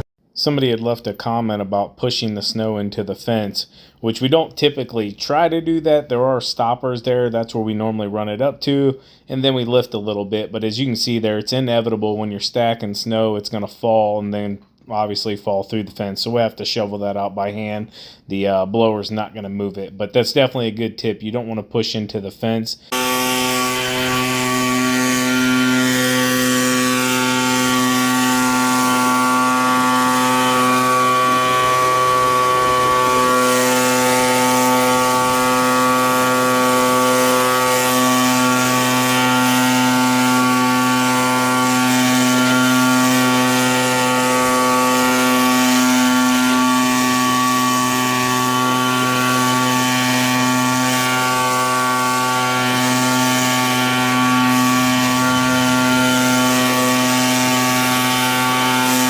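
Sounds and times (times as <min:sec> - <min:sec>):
snow-clearing machine engine drone: 0:22.9 - 0:59.0.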